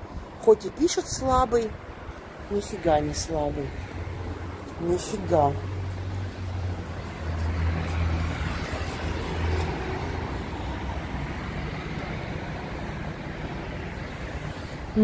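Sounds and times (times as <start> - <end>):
steady traffic roar: 0.0 - 15.0.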